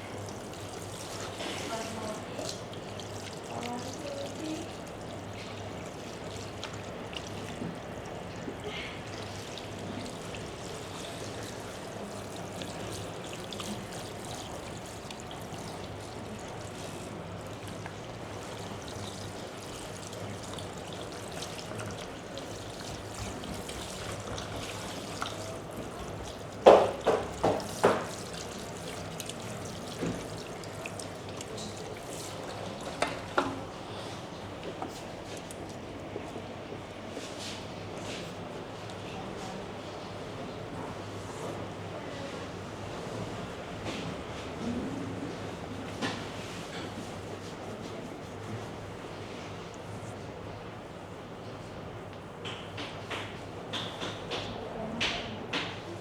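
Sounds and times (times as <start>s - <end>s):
water pouring over hair: 0.0s - 33.8s.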